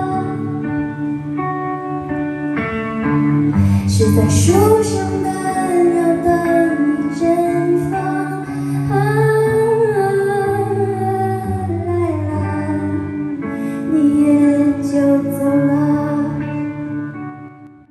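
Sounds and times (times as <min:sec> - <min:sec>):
woman singing: 0:00.0 - 0:01.0, 0:03.6 - 0:16.8
guitar accompaniment: 0:00.0 - 0:17.9.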